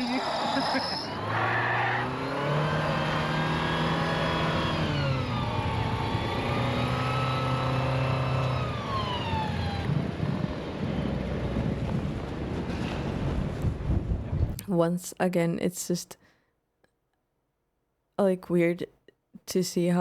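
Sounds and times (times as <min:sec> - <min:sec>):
car engine revving: 0:00.0 - 0:11.8.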